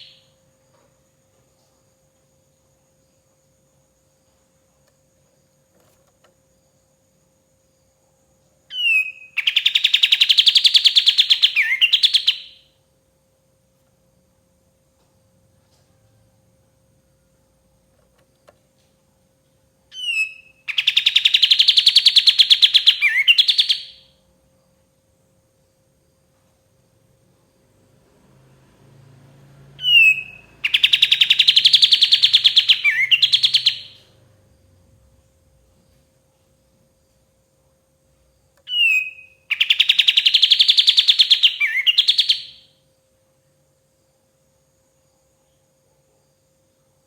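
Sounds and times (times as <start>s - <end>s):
songbird trilling: 0.0s - 0.2s, 8.7s - 12.7s, 19.9s - 24.1s, 29.8s - 34.1s, 38.7s - 42.7s
faint steady hum: 0.0s - 47.0s.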